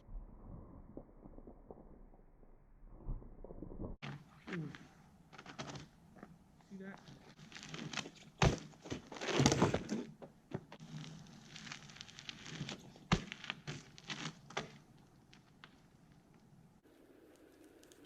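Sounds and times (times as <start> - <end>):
crunching and scraping in snow: 10.8 - 14.4.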